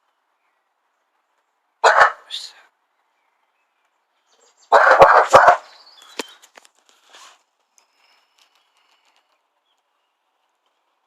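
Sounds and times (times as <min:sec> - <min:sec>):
dog barking loudly: 0:01.8 - 0:02.4, 0:04.7 - 0:05.8.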